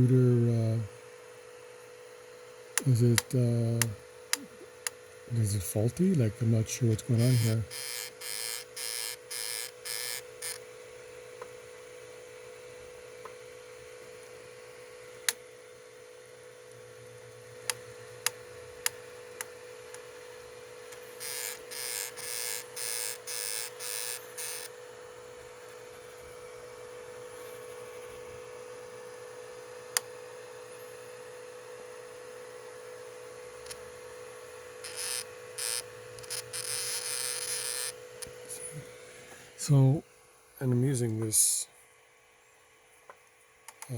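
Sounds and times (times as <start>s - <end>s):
printer motor hum: 0.0s - 40.2s
stepper motors buzzing: 2.8s - 10.6s, 20.9s - 24.8s, 34.8s - 38.9s.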